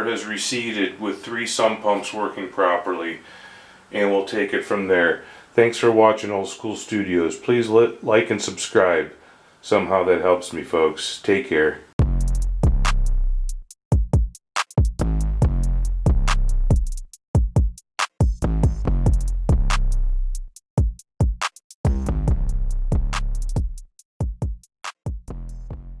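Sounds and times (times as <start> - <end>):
electronic music with drum machine: 12.0 - 26.0.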